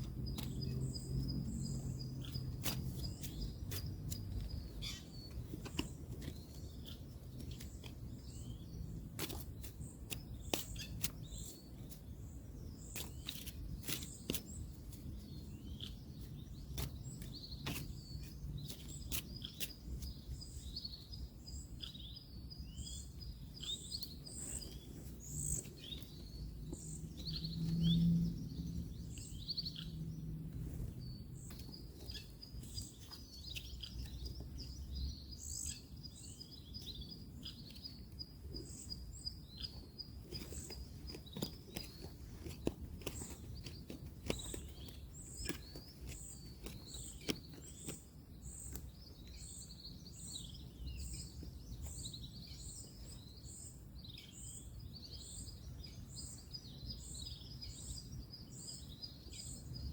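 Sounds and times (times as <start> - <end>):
distant road traffic rumble: 0.0 - 11.4, 23.6 - 52.8
birds chirping and calling: 0.0 - 59.9.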